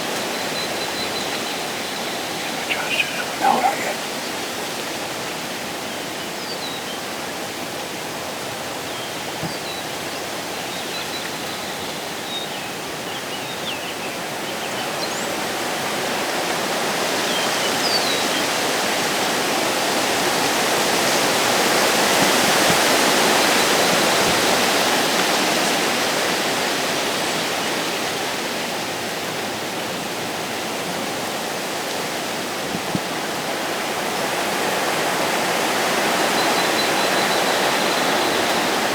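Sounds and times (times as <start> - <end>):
wind through woods: 0.0 - 4.5
faint bird chirps: 1.0 - 4.1.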